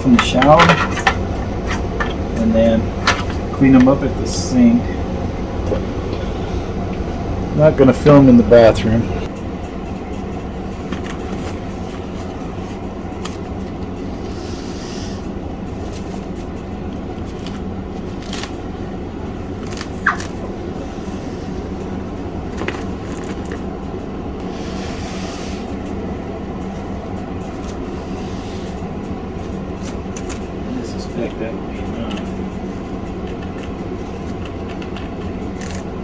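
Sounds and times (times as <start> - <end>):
low mechanical hum: 0.0 - 36.0
short high squeak: 19.9 - 20.3.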